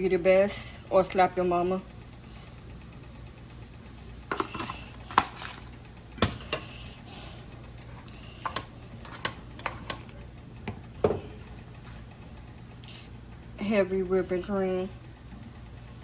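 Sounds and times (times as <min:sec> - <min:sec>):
utensils clicking against bowl: 0:04.2 - 0:06.8, 0:07.8 - 0:10.7.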